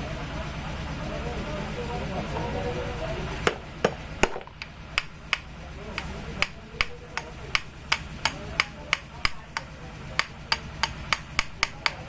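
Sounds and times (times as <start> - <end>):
hammer tapping on metal: 3.5 - 12.0.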